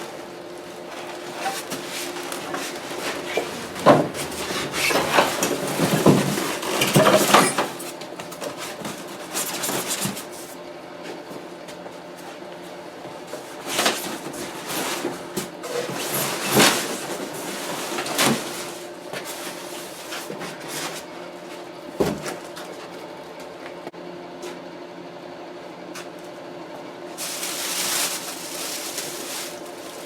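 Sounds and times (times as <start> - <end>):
packaging rustling: 0.7 - 6.7, 27.2 - 30.0
scraping of parts: 0.9 - 7.8.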